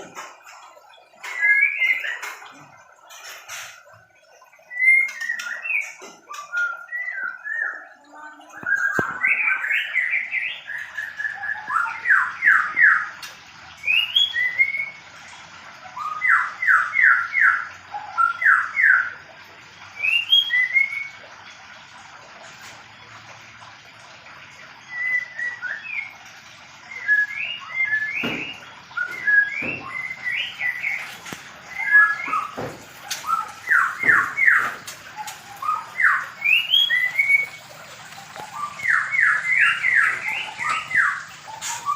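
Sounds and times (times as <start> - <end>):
birds calling sharp rising notes: 24.8 - 41.9.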